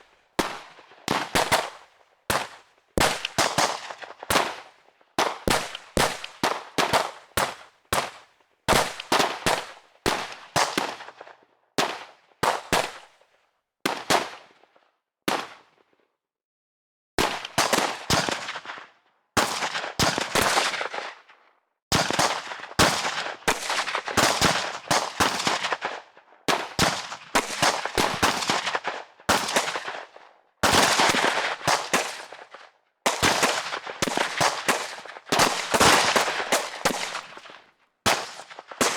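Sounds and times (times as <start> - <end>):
gunshots with reverberant tail: 33.1 - 38.9.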